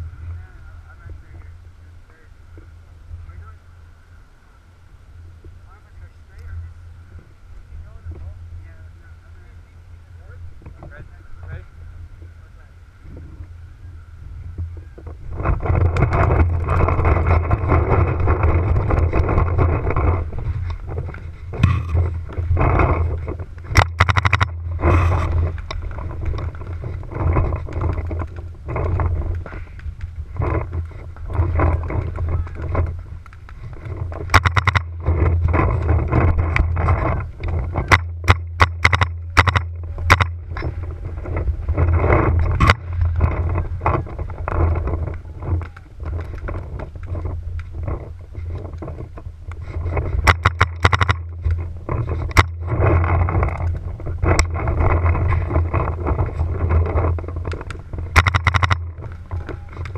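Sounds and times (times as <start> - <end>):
wind buffeting microphone: 0.0 - 59.9
paintball markers firing: 37.5 - 40.4.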